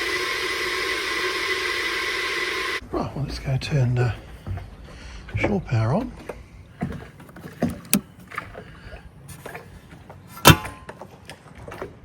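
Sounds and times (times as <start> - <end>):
knocks and clunks on a boat: 4.2 - 12.0.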